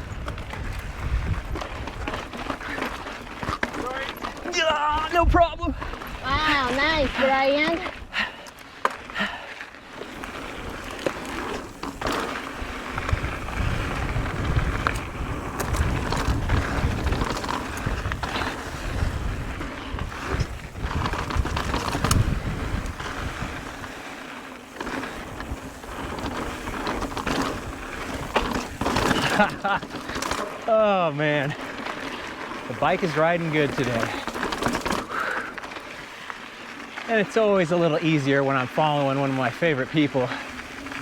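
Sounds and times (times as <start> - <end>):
wind rumble on microphone: 0.0 - 2.6, 10.5 - 24.0
bike rattles and knocks: 0.0 - 8.0, 8.8 - 36.2
bike tyres on dirt trail: 0.0 - 41.0.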